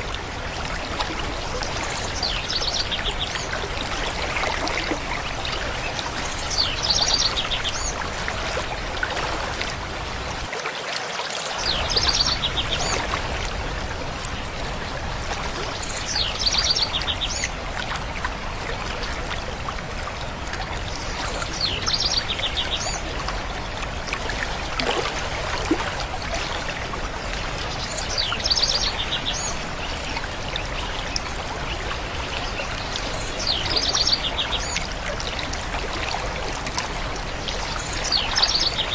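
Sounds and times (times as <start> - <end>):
running water: 0.0 - 38.9
songbird singing: 37.8 - 38.9.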